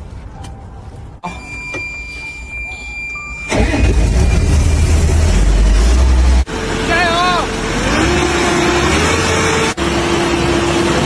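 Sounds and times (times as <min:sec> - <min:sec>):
diesel engine running: 0:03.5 - 0:11.0.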